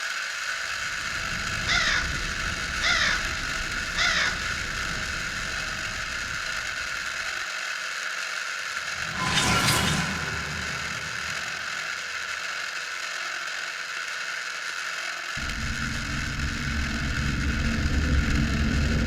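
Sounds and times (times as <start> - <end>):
crow-like caws: 1.5 - 5.2.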